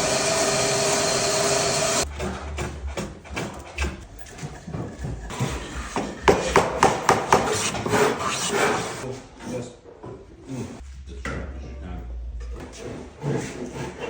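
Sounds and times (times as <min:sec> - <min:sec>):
scraping on wood: 0:02.1 - 0:09.1, 0:12.6 - 0:14.0.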